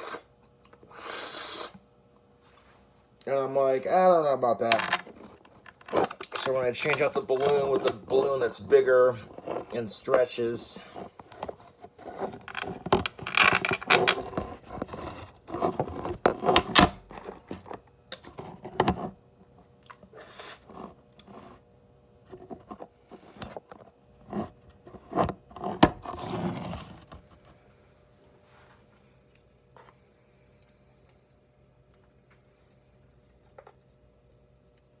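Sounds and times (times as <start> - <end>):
scraping and rubbing handling noises: 2.6 - 19.2, 20.3 - 27.7.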